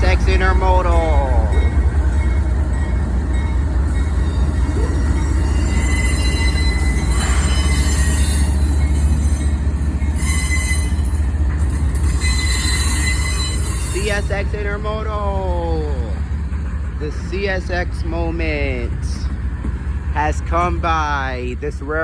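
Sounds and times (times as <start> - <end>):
freight train rumbling: 0.0 - 22.0
high-pitched wheel squeal: 4.2 - 11.3, 11.9 - 14.0.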